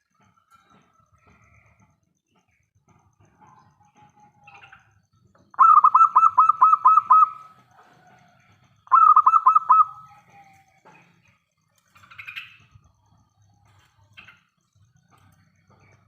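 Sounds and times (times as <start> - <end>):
dove cooing: 5.5 - 8.0, 8.9 - 10.6.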